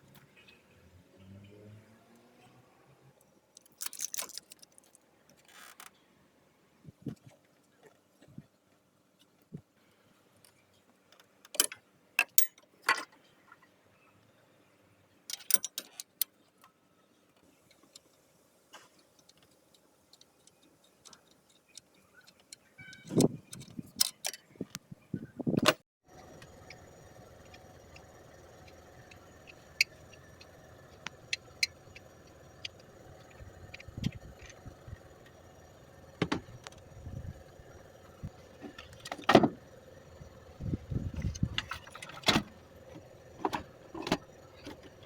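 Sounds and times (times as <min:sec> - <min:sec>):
alternator whine: 0:26.1 - 0:45.0
car engine running: 0:26.1 - 0:45.0.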